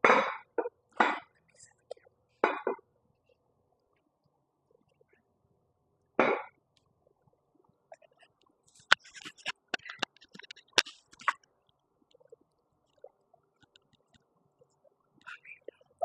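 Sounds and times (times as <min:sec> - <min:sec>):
sharp clicks and crackling: 0:08.0 - 0:16.0.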